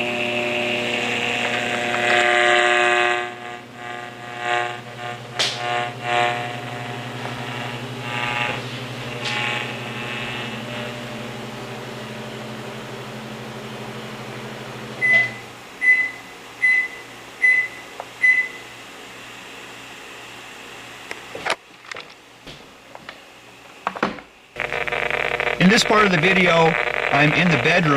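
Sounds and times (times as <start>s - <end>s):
microwave oven humming: 0.0s - 21.4s, 23.4s - 27.9s
short high-pitched beeps: 15.0s - 18.6s.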